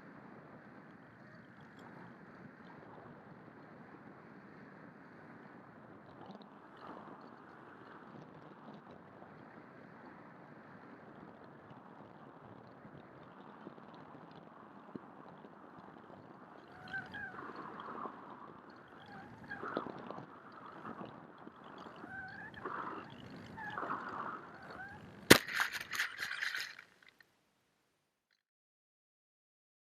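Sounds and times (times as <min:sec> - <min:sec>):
wind noise: 0:00.1 - 0:27.2
rapid rattling clicks: 0:25.3 - 0:27.2.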